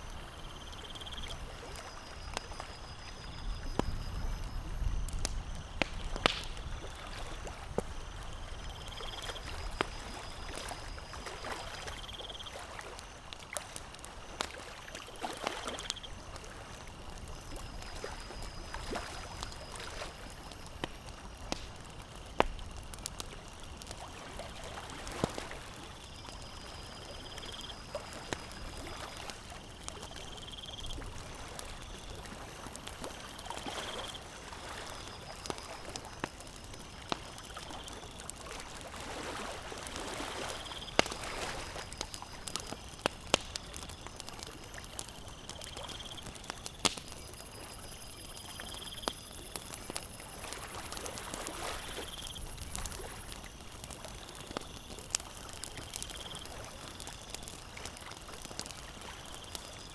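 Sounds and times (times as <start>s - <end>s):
campfire crackling and popping: 0.0s - 59.9s
lake waves lapping: 6.3s - 17.1s, 17.8s - 20.4s, 30.9s - 36.0s, 37.0s - 43.8s, 45.7s - 57.1s.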